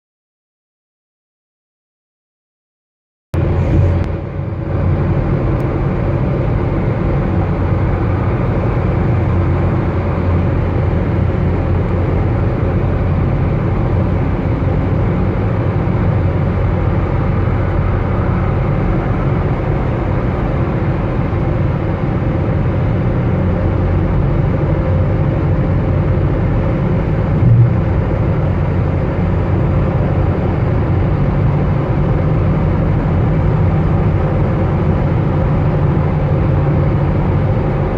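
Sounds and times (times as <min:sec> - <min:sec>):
car engine and road noise: 0:03.4 - 0:37.9
car bump: 0:27.4 - 0:28.2.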